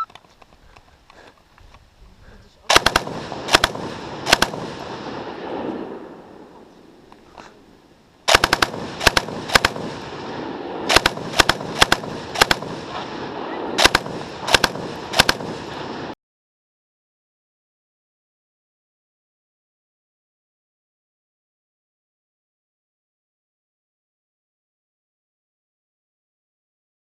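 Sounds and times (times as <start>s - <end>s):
machine gun shots: 2.7s - 5.0s, 8.3s - 10.2s, 10.9s - 13.2s, 13.8s - 16.0s.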